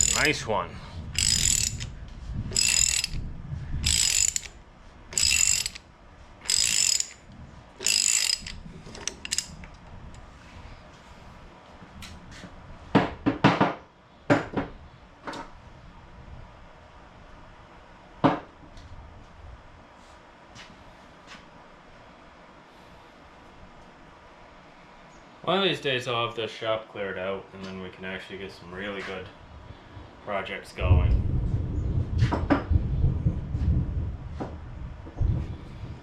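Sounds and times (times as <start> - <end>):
ratchet wrench clicking: 0.0 - 0.4, 1.2 - 1.9, 2.5 - 3.2, 3.8 - 5.8, 6.4 - 9.8.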